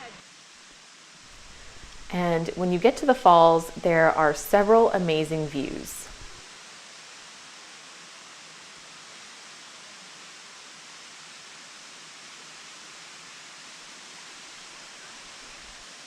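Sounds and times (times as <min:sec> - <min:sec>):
waterfall rushing: 0:01.3 - 0:06.4.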